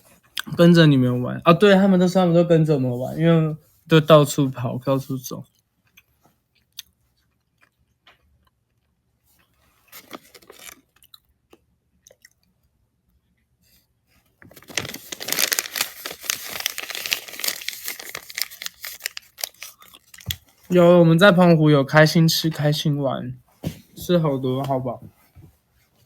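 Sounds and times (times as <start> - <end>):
close crunching and crinkling: 5.5 - 12.5, 14.2 - 20.7.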